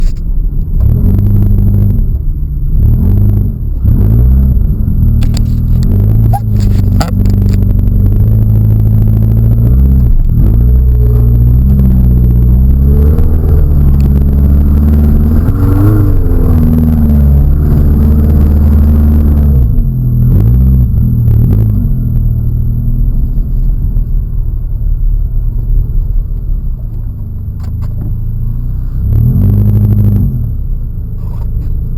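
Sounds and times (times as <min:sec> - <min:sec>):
car engine revving: 0:00.0 - 0:31.9
sharp knocks or scrapes: 0:05.2 - 0:07.6.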